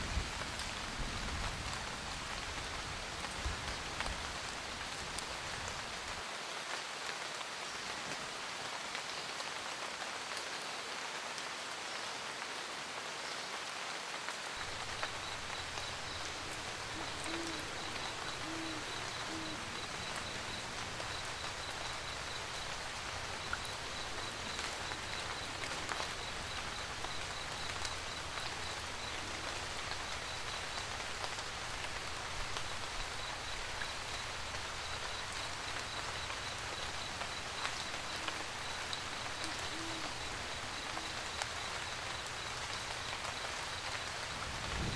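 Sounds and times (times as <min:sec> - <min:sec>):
rain pattering on roof: 0:00.0 - 0:12.5, 0:13.6 - 0:44.9
owl hooting: 0:14.6 - 0:29.6, 0:36.7 - 0:41.5.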